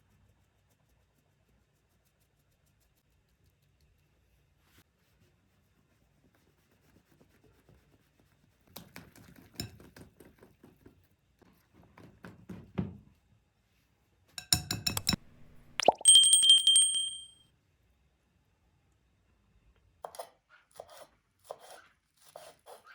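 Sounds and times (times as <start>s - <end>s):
utensils clinking against dishes: 14.4s - 17.3s
ringing chime: 15.8s - 17.4s.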